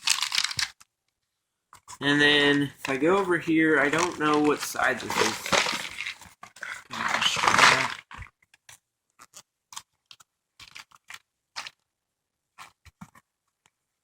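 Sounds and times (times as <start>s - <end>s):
bag rustling and crinkling: 0.0s - 0.8s, 2.4s - 8.3s.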